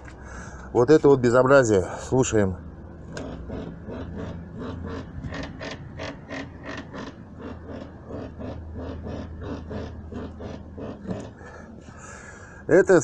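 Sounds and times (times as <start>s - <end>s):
suspension bushings creaking: 2.9s - 12.4s.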